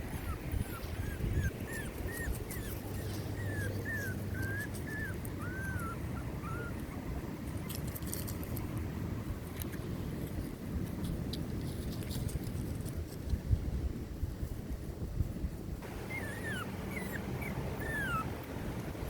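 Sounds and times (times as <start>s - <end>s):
puppy whimpering: 0.1s - 7.2s, 15.9s - 18.5s.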